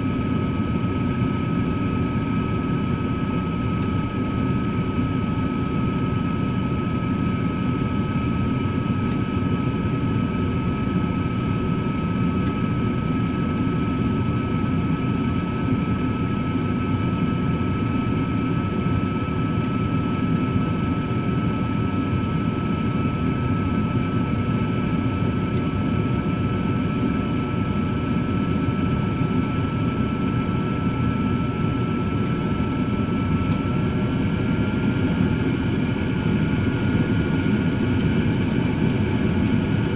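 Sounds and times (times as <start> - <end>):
thin steady whine: 28.6 - 39.9
air fryer fan rushing: 31.8 - 39.9.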